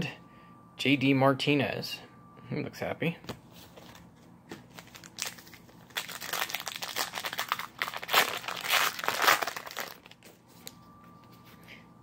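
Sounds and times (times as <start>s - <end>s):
plastic wrapper crinkling and tearing: 4.7s - 10.4s.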